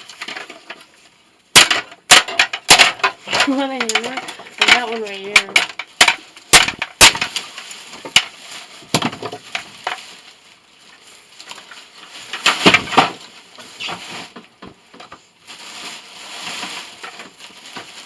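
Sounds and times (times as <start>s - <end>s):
metal crunching and scraping: 0.0s - 18.0s
hand tools knocking on metal: 1.6s - 7.2s.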